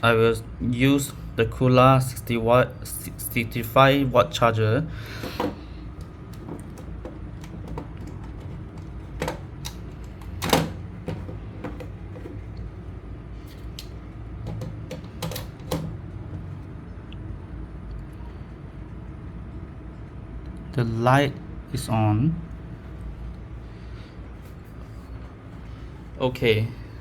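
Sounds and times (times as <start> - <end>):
steady low hum: 0.0 - 27.0
charging adapter clicks and knocks: 5.2 - 12.4, 14.5 - 16.0.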